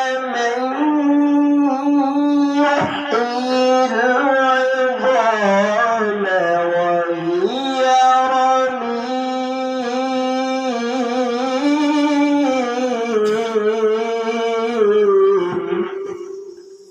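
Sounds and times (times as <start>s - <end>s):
man reciting melodically: 0.0s - 16.9s.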